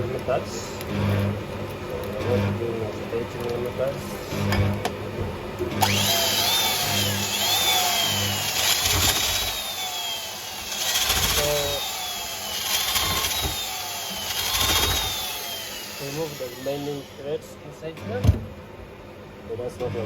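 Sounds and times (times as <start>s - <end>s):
electric drill whining: 5.8s - 17.2s
grinding hiss: 5.8s - 17.5s.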